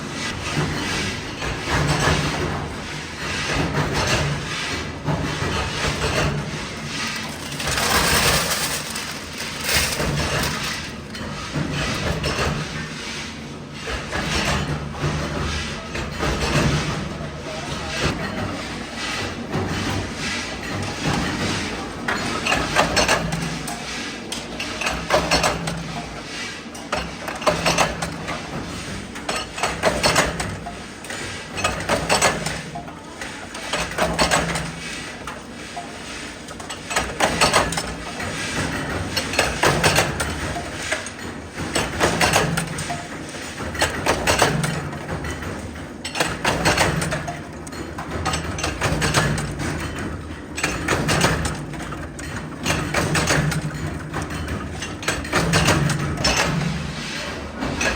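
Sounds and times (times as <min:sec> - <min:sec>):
metal machinery clanking: 0:05.6 - 0:12.6.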